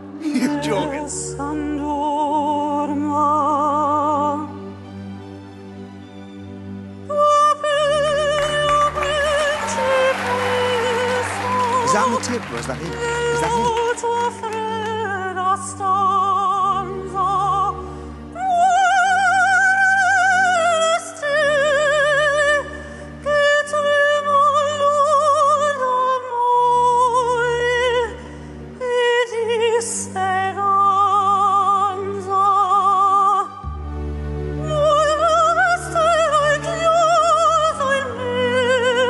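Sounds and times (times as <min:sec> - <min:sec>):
orchestral backing track: 0:00.0 - 0:39.0
man singing opera: 0:00.2 - 0:01.4, 0:11.4 - 0:14.3.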